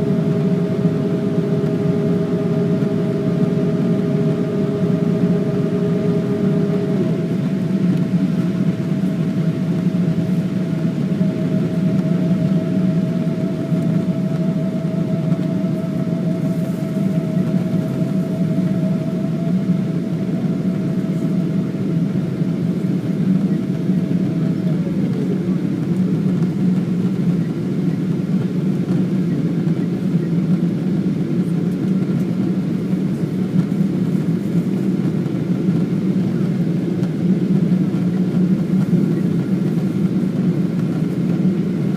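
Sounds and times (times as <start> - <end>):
higher hum: 0.0 - 29.0
jet engines droning in cabin: 0.0 - 41.9.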